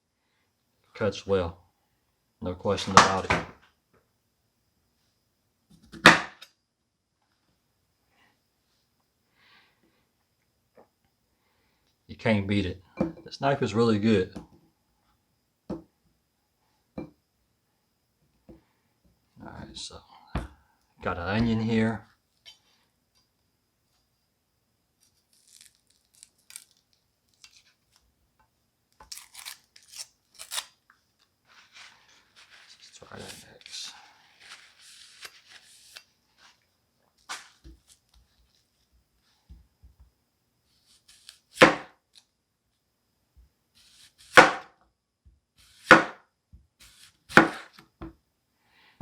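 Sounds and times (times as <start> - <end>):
onion skin crackling and tearing: 25.0 - 28.0, 29.0 - 30.9
knife slicing onion: 40.9 - 42.0, 43.8 - 44.7, 45.6 - 46.2, 46.8 - 47.8.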